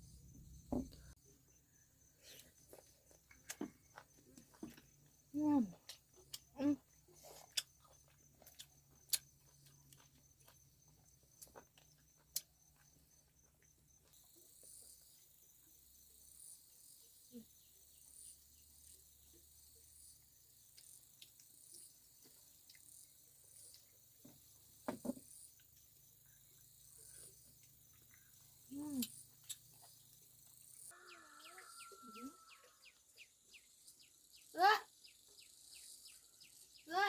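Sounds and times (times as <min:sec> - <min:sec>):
insects chirping: 0:00.0 - 0:37.0.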